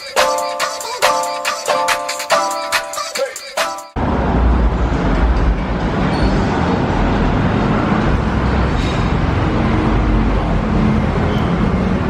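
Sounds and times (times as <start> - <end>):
vehicle and road noise: 4.0 - 12.0.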